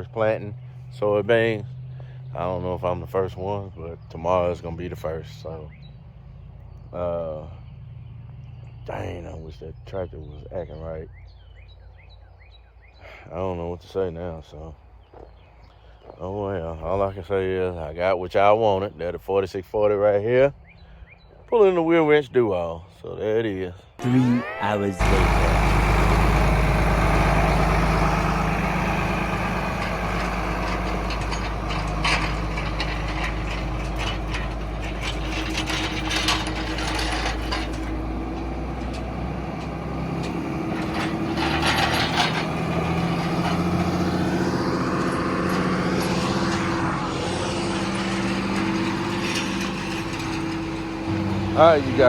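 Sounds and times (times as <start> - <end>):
tractor diesel engine under load: 0.0 - 11.4, 24.7 - 52.0
implement rattles and clanks: 25.0 - 52.0.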